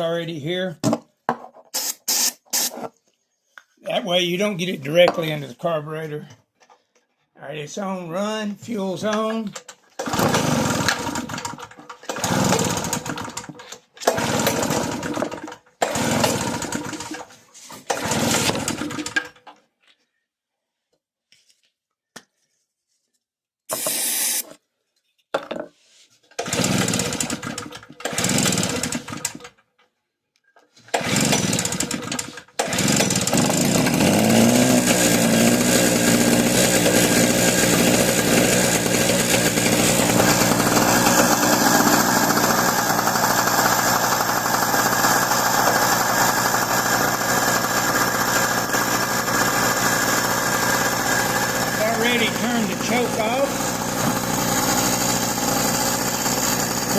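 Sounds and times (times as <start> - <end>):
generator pull-start sputtering: 9.1 - 19.5, 26.3 - 29.6, 30.8 - 56.9
two-stroke generator engine running: 10.0 - 17.2, 17.9 - 19.2, 26.4 - 29.4, 30.9 - 56.9.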